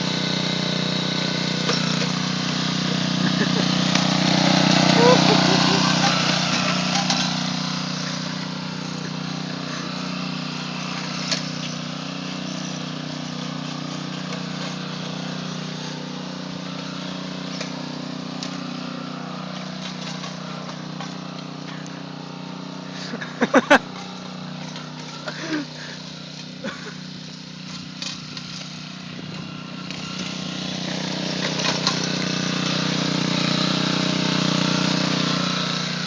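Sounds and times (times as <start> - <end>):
lawn mower engine running: 0.0 - 36.0.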